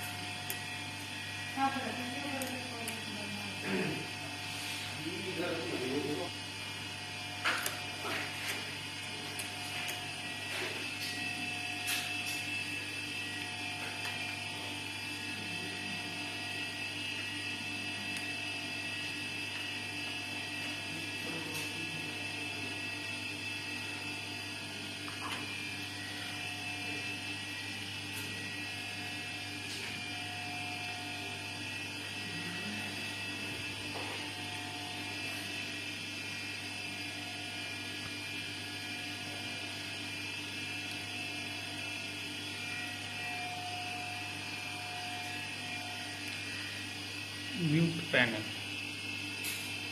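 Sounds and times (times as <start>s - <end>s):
machine electrical hum: 0.0s - 49.9s.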